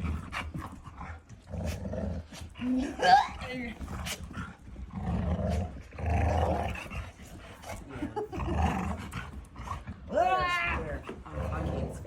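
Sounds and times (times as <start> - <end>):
dog growling: 0.0 - 12.0.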